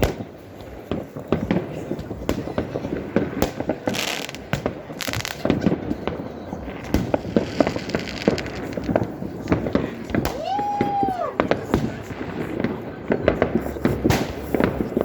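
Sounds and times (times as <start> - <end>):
fireworks bangs and crackling: 0.0 - 15.0
hissing firework burst: 2.4 - 10.4.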